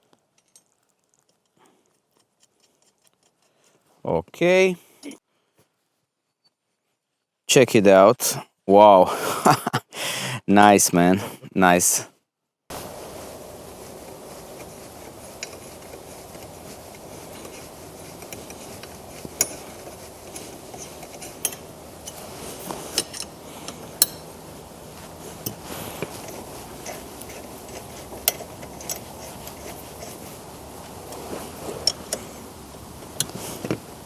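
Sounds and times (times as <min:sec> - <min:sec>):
steady background hiss: 0:07.5 - 0:09.8, 0:10.5 - 0:12.1, 0:12.7 - 0:34.0
metal tools clinking on metal: 0:12.7 - 0:33.6.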